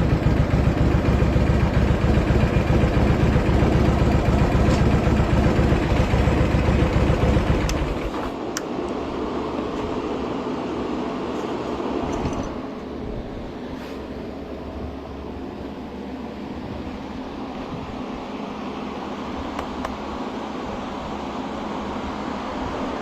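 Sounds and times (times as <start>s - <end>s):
motorcycle engine rumble: 0.0s - 10.2s
sharp clicks: 19.6s - 20.0s.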